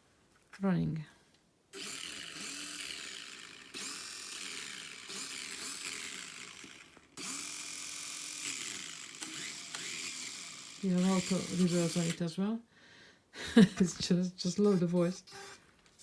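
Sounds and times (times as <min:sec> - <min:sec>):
toy car electric motor whirring: 0:01.7 - 0:12.2, 0:14.5 - 0:16.0.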